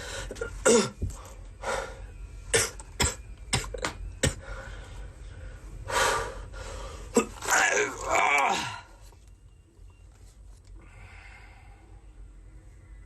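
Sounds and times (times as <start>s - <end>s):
man coughing: 0.3s - 1.0s.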